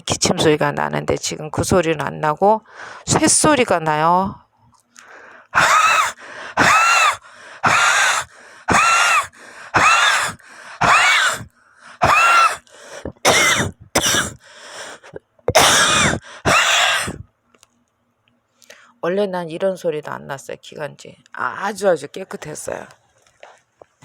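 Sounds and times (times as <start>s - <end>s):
woman coughing wheezily: 5.6s - 12.6s, 13.2s - 14.4s, 15.5s - 17.2s.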